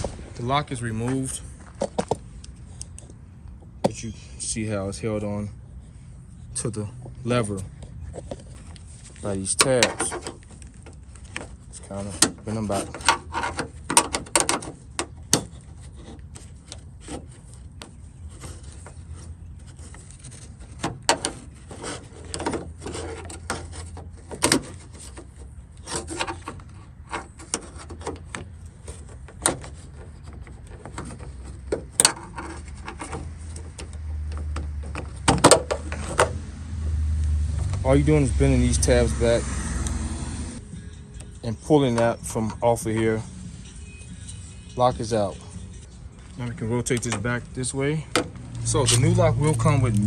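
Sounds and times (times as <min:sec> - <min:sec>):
low hum: 0:00.0 - 0:03.6
small metal parts clicking and scraping: 0:40.6 - 0:50.0.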